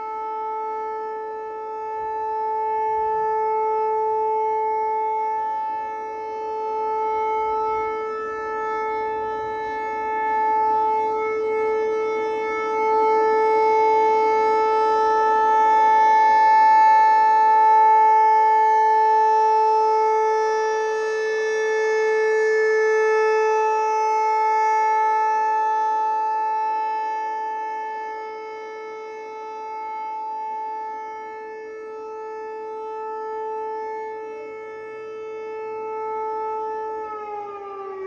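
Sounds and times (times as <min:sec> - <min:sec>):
tornado warning siren steady tone: 0:00.0 - 0:38.0.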